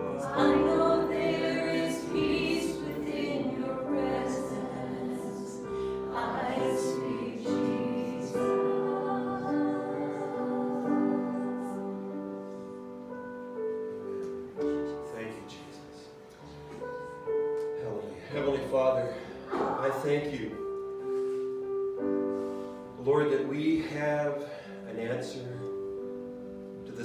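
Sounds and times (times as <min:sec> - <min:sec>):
congregation singing: 0:00.0 - 0:13.2, 0:17.8 - 0:20.6.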